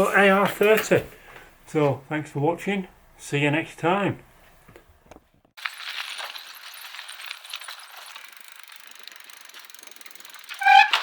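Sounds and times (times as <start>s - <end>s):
ratchet-like mechanical clicking: 8.0s - 11.0s
loud pitched squeak: 10.5s - 11.0s.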